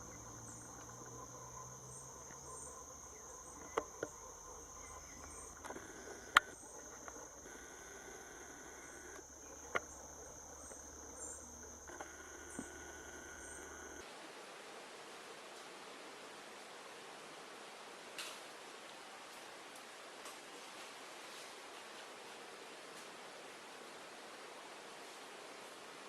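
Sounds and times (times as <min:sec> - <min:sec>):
faint high chirps: 0:00.0 - 0:14.0
high-pitched insect drone: 0:00.0 - 0:14.0
sharp clicks: 0:05.6 - 0:09.9.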